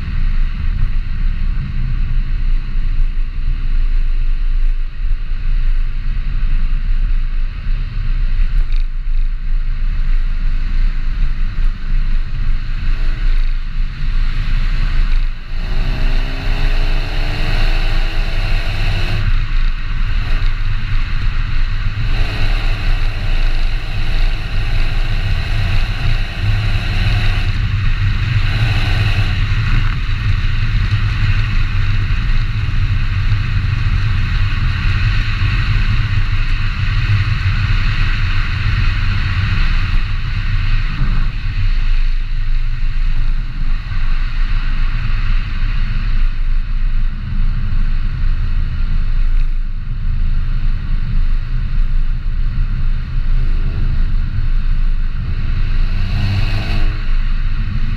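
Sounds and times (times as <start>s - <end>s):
road and wind noise: 0.0s - 57.9s
car engine running: 11.0s - 38.5s, 53.0s - 57.9s.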